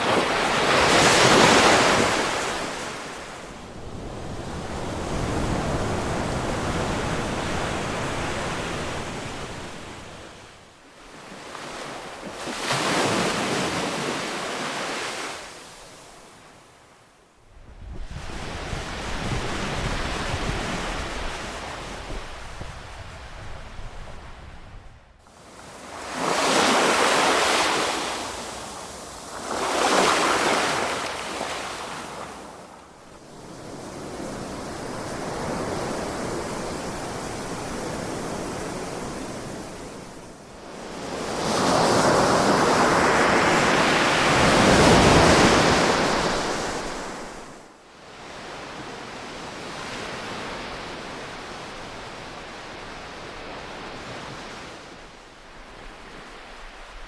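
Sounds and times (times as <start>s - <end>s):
ocean waves breaking: 0.0s - 10.4s, 11.0s - 16.3s, 25.3s - 40.2s.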